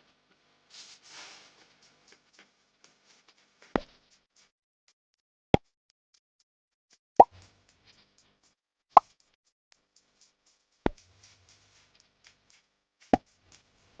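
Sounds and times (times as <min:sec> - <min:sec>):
faint crackles and ticks: 0:00.0 - 0:04.5, 0:07.3 - 0:14.0.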